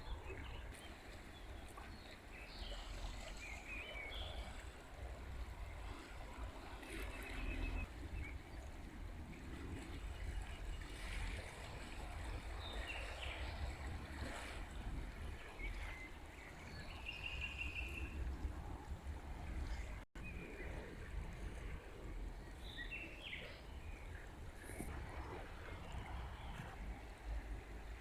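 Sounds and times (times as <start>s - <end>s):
songbirds chirping: 15.4s - 18.9s.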